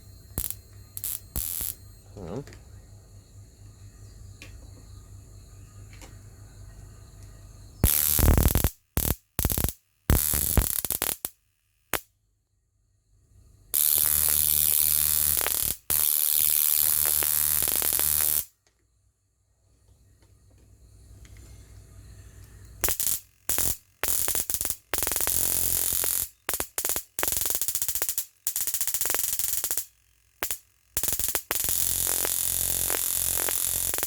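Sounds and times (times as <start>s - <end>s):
high-voltage arcs snapping: 0.0s - 1.8s, 7.8s - 12.0s, 13.8s - 18.5s, 22.8s - 34.0s
steady buzzing arc: 0.0s - 2.1s, 7.8s - 12.0s, 13.7s - 18.5s, 22.8s - 34.0s
faint hum: 0.0s - 8.7s.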